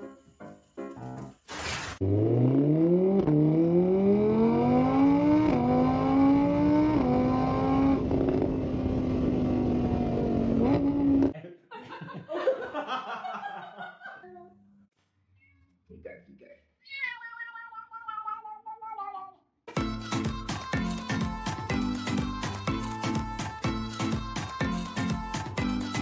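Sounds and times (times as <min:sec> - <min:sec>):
car engine accelerating: 0:02.0 - 0:11.3.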